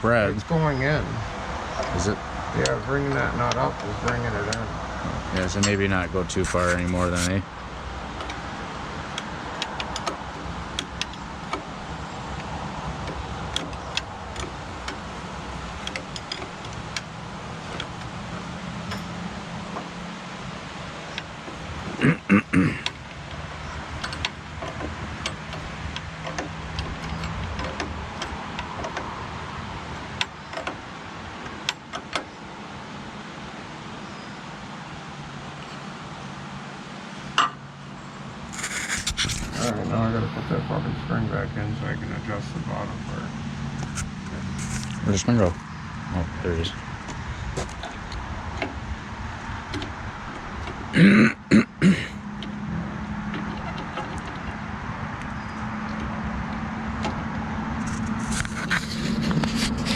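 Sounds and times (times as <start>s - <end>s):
steady low hum: 0.0s - 59.9s
man coughing: 22.0s - 22.9s, 51.0s - 52.2s.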